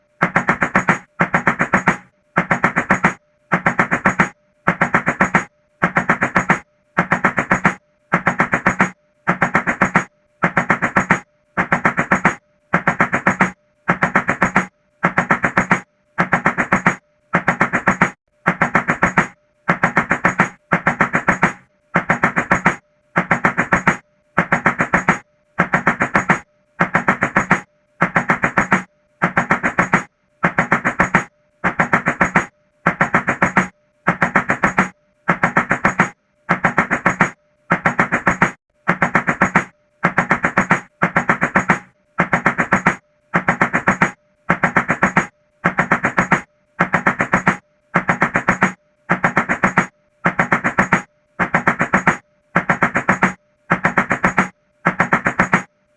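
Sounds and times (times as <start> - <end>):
rapid knocking on a door: 0.2 - 55.7.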